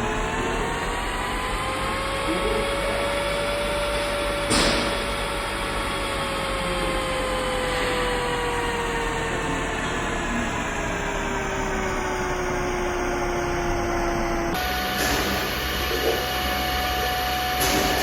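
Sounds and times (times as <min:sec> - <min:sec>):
cnc engraving machine whine: 0:00.0 - 0:18.0.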